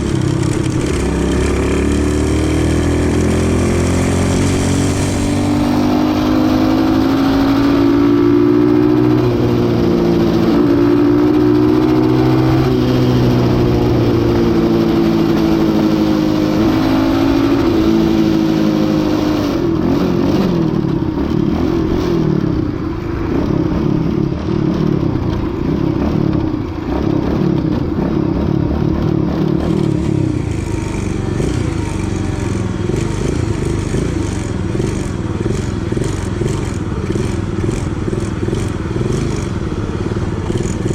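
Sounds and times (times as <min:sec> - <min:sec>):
small motorbike engine running: 0:00.0 - 0:18.3, 0:27.2 - 0:40.9.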